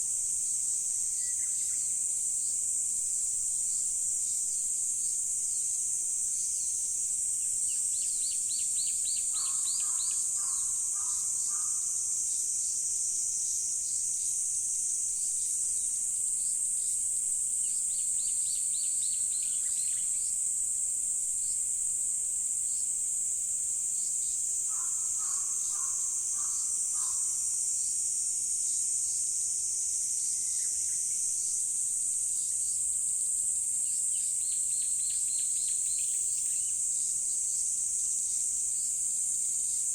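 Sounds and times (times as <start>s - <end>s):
insects chorus: 0.0s - 39.9s.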